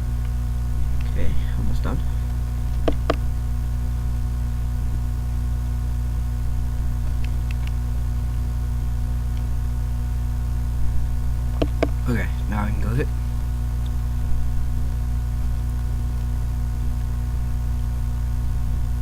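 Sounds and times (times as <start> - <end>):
electrical mains hum: 0.0 - 19.0
sharp click: 2.7 - 3.2, 7.0 - 7.8, 11.5 - 12.0
faint ticks: 7.0 - 7.8, 9.3 - 9.6.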